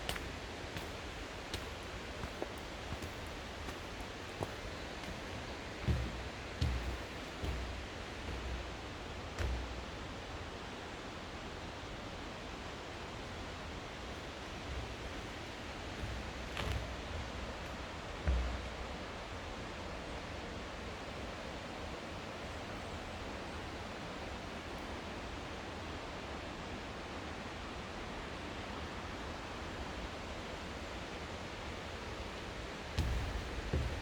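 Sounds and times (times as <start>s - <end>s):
low thud: 0.1s - 10.0s, 33.0s - 34.0s.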